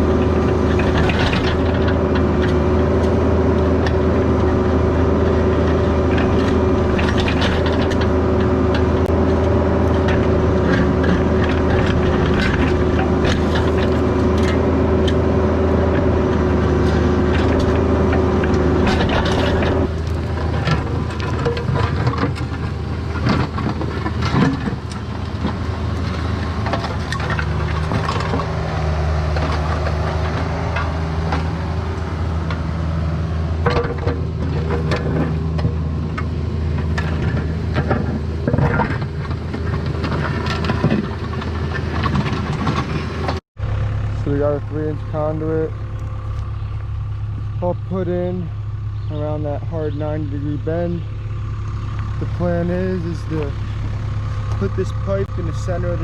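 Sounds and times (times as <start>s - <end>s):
excavator diesel engine running: 0.0s - 56.0s
clinks and knocks: 0.6s - 3.2s, 5.3s - 9.1s, 9.9s - 15.2s, 16.9s - 28.5s.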